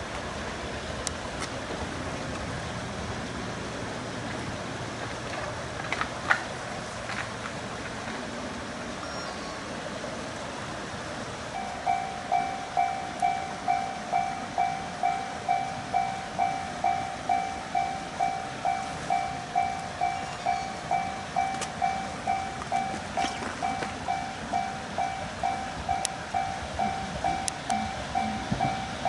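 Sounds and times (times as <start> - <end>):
background hiss: 0.0 - 29.0
level crossing warning bell: 11.5 - 29.0.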